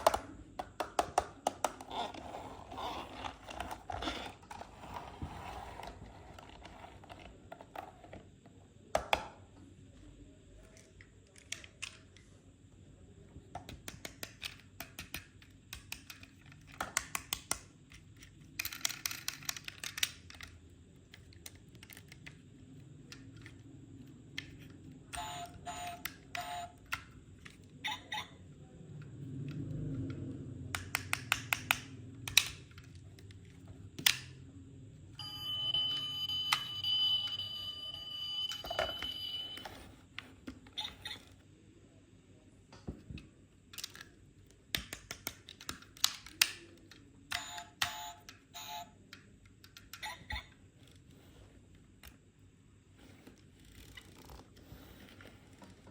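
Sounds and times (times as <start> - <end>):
toy cars clicking and rattling: 13.7 - 22.4.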